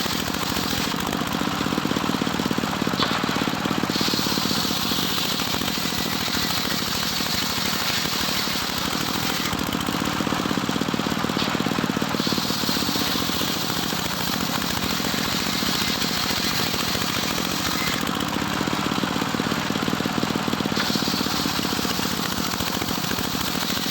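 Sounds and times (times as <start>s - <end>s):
circular saw running: 0.0s - 23.9s
saw blade hissing through wood: 3.8s - 9.6s, 12.0s - 18.1s, 20.6s - 23.9s.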